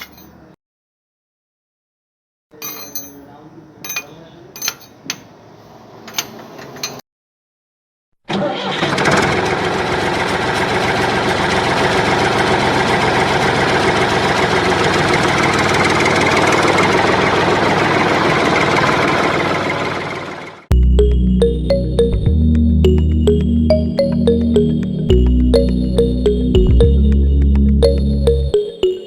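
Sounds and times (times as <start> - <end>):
engine starting and running: 8.3 - 28.5.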